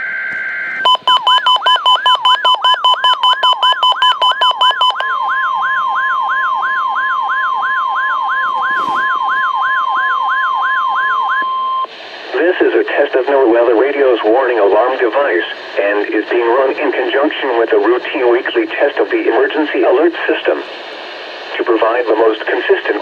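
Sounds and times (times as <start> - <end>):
steady alarm tone: 0.8 - 11.9
fast pulsing beep: 0.9 - 5.0
rising siren whoop: 5.0 - 11.4.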